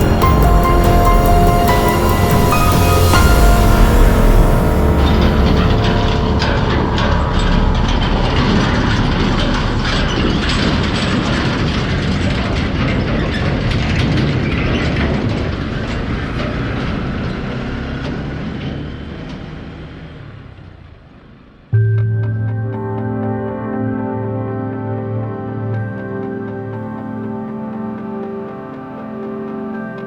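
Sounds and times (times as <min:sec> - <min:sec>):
road vehicle rumbling: 0:00.0 - 0:21.8.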